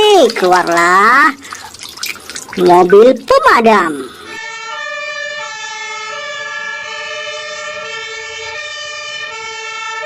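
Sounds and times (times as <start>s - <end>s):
fire truck siren electronic tones: 4.3s - 10.0s.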